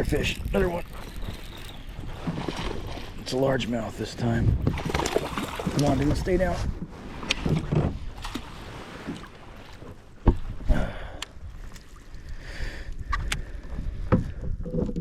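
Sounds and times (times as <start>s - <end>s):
knocks against kayak: 10.2s - 10.5s.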